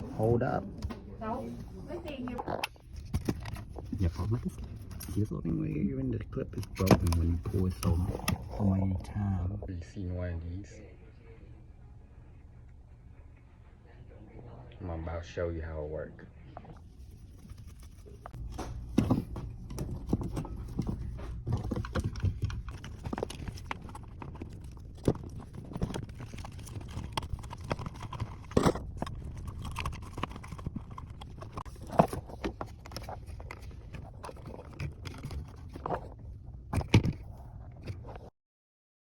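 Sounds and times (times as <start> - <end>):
low steady hum: 0.0 - 38.3.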